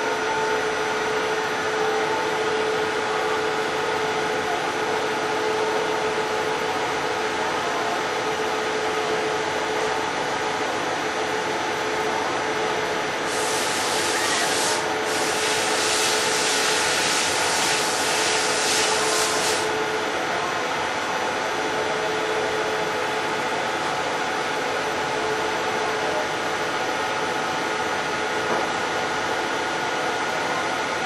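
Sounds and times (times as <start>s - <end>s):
milling machine hum: 11.6s - 25.8s
harsh high hiss of cutting: 13.2s - 19.7s.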